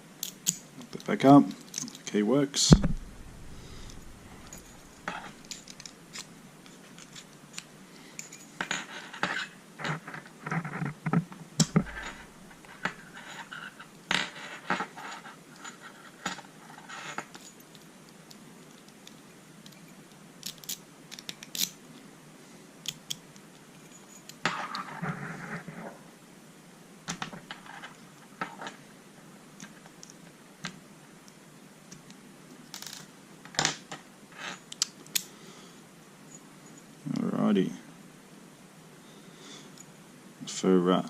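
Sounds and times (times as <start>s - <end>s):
metallic scraping: 2.7s - 6.3s, 11.7s - 13.8s.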